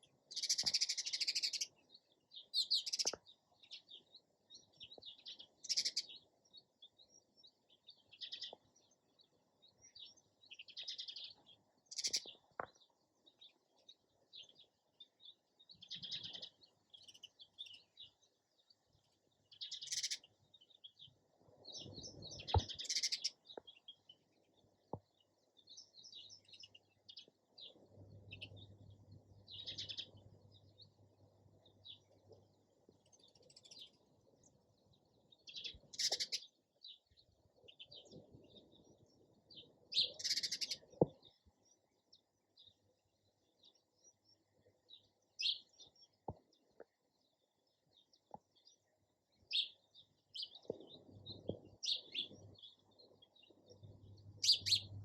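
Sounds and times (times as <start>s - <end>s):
sparrows chirping: 0.0s - 55.0s.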